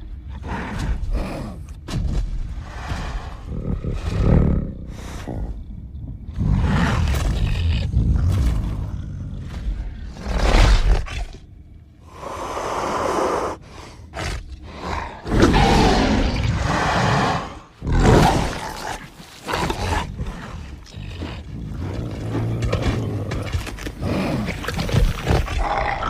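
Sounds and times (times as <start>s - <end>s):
deep rumble: 0.0s - 12.6s
dinosaurs roaring: 12.1s - 26.0s.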